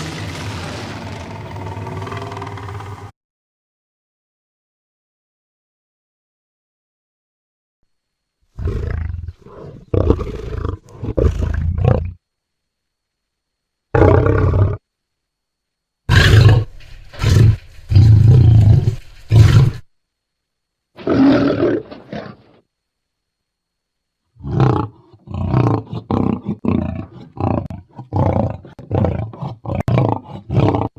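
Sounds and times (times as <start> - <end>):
dinosaur roars and growls: 0.0 - 3.1, 8.6 - 12.2, 16.1 - 19.8, 24.4 - 30.9.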